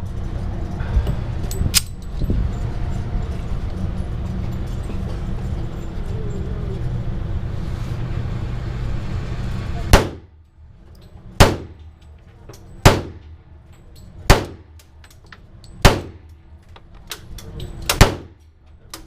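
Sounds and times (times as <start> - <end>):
steady low rumble: 0.0 - 19.0
pistol shots: 9.9 - 10.3, 11.4 - 11.8, 12.8 - 13.4, 14.3 - 14.8, 15.8 - 16.3, 17.9 - 18.4.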